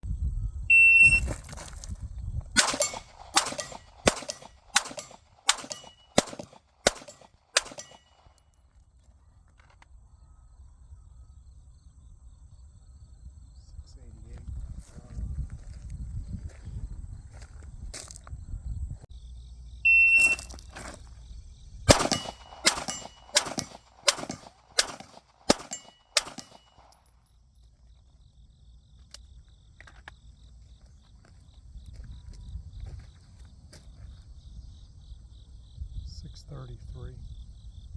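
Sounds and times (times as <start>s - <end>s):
shot timer beep: 0.7s - 1.3s, 19.9s - 20.5s
steel plate ringing: 2.6s - 6.2s, 22.1s - 23.8s, 25.5s - 26.8s
pistol shots: 2.6s - 8.3s, 21.9s - 27.0s.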